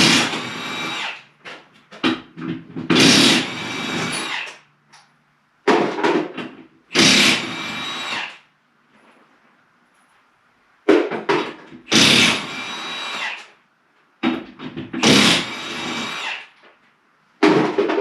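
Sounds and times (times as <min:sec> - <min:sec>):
impact wrench running: 0:00.0 - 0:01.0, 0:11.9 - 0:12.6, 0:15.0 - 0:16.2.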